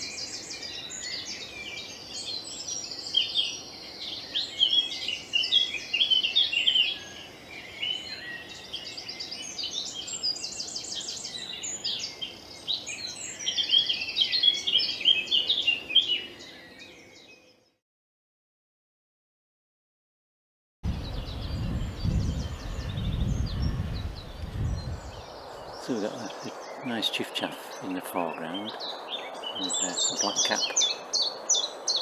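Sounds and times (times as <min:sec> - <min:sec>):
songbirds singing: 0:00.0 - 0:17.8, 0:20.8 - 0:32.0
rapid trilled bird phrases: 0:25.3 - 0:32.0.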